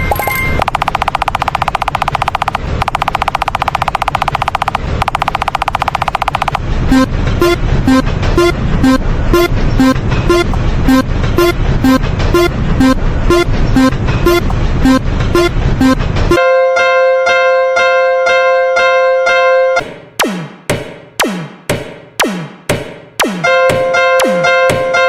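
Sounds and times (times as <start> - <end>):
rapid rattling buzz: 0.6 - 6.6.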